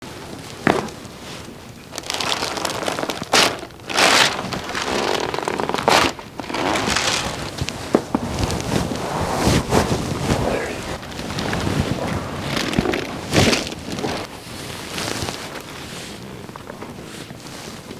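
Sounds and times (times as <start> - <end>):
clothing and table rustling: 0.0 - 17.9
spine joints cracking: 1.9 - 8.6, 10.5 - 14.3.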